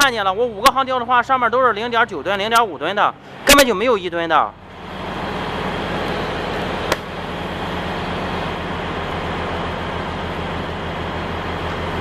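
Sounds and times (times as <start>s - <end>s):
road noise: 0.0s - 12.0s
vehicle engine humming: 0.0s - 12.0s
sharp click: 6.9s - 7.1s.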